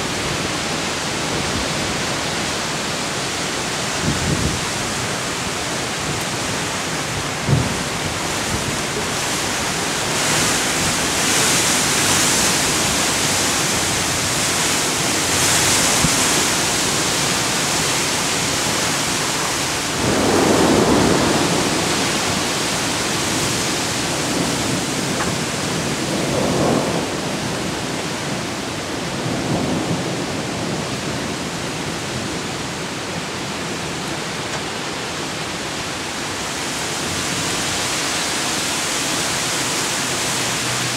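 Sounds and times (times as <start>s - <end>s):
gusting wind: 0.0s - 40.9s
heavy rain hiss: 0.0s - 40.9s
thunder rumbling: 19.9s - 34.4s.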